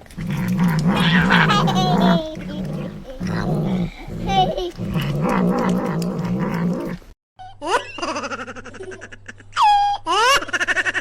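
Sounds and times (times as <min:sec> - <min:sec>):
low growl: 0:00.0 - 0:07.2.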